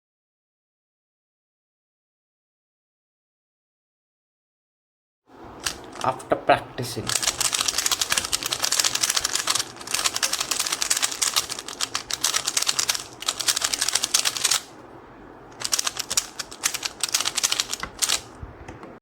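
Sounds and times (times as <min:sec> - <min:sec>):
speed cube clicking turns: 0:05.6 - 0:06.2, 0:07.1 - 0:14.7, 0:15.5 - 0:18.4.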